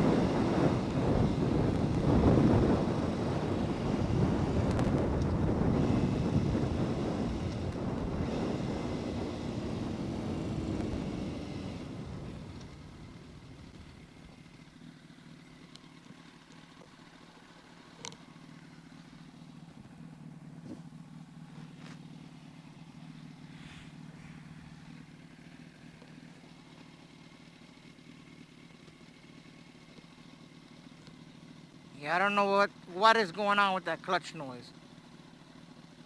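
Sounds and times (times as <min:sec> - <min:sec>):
motorcycle engine idling: 0:00.0 - 0:36.0
faint clicks: 0:31.0 - 0:31.2.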